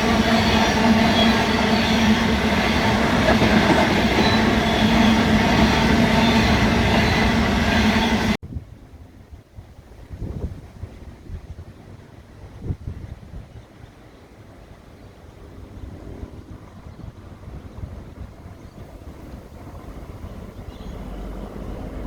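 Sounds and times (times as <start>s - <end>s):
diesel train passing: 0.0s - 8.4s, 13.8s - 22.0s.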